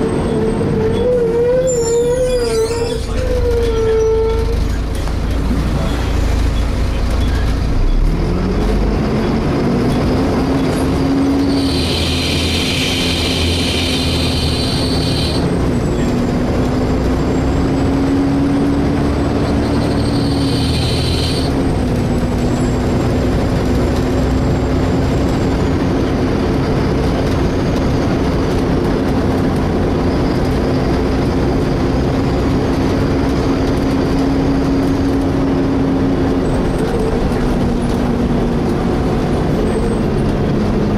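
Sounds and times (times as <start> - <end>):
loud high-pitched screeching: 1.0 - 4.8, 11.2 - 16.0, 19.4 - 21.5
bus cooling fan whine: 11.5 - 16.0.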